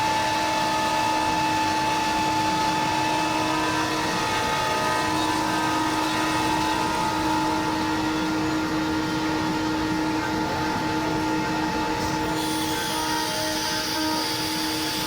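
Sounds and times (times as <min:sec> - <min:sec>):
router spindle whining: 0:00.0 - 0:15.0.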